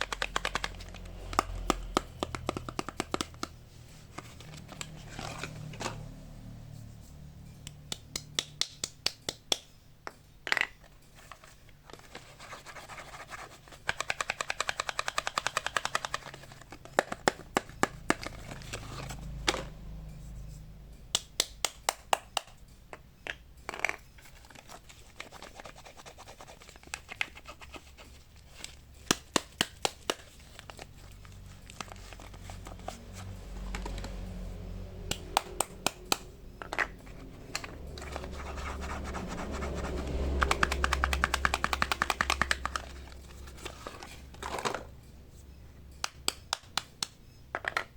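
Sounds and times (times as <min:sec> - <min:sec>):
packaging scratches and clicks: 0:00.0 - 0:06.2, 0:10.8 - 0:19.6, 0:23.7 - 0:44.9.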